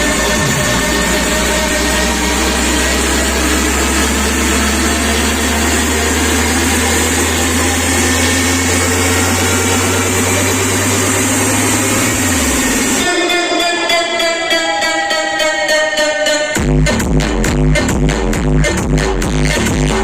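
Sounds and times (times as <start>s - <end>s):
deep bass tone: 0.0s - 13.1s
street noise: 0.0s - 13.8s.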